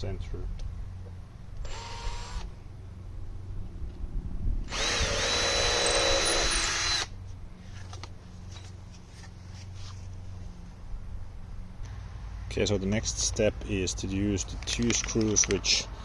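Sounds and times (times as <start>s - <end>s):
power drill whining: 1.6s - 2.5s, 4.7s - 7.1s.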